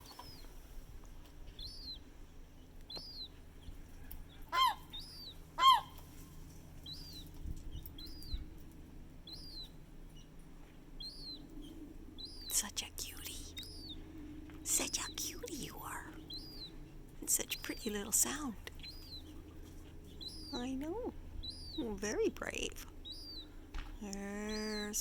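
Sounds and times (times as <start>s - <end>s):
gull chick peeping: 0.0s - 0.6s, 1.4s - 6.2s, 6.8s - 8.6s, 9.2s - 10.3s, 11.0s - 25.0s
loud low gull call: 4.5s - 5.0s, 5.6s - 6.0s.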